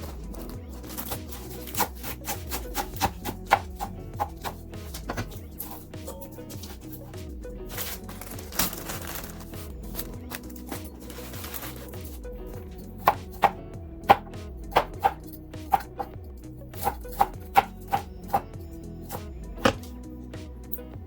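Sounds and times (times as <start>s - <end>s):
background music: 0.0s - 21.0s
knife chopping on cutting board: 0.4s - 5.7s, 13.0s - 16.0s.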